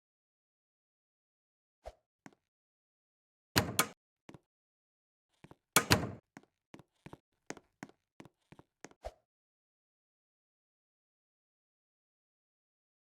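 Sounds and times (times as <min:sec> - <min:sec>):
sharp knocks and clicks: 0:03.6 - 0:04.0.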